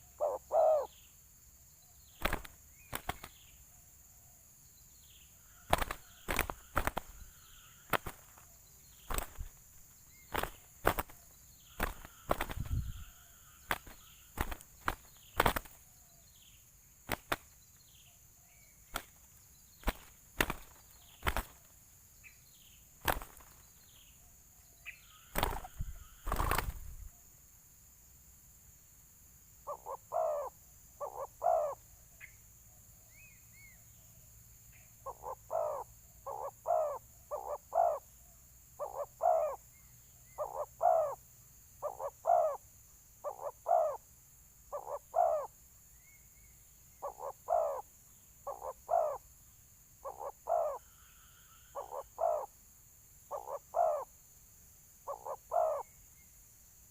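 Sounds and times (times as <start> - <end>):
doves cooing: 0.0 - 0.9, 5.4 - 8.4, 9.1 - 9.6, 11.8 - 15.8, 25.2 - 27.1, 29.7 - 31.8, 35.0 - 38.0, 38.8 - 39.6, 40.4 - 41.2, 41.8 - 42.6, 43.2 - 44.0, 44.7 - 45.5, 47.0 - 47.8, 48.4 - 49.2, 50.0 - 52.5, 53.3 - 54.1, 55.1 - 55.9.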